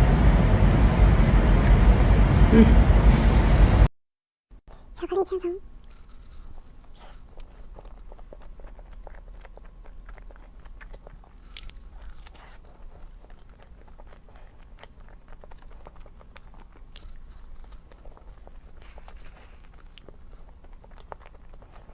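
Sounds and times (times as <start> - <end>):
chewing with mouth clicks: 5.8 - 21.9.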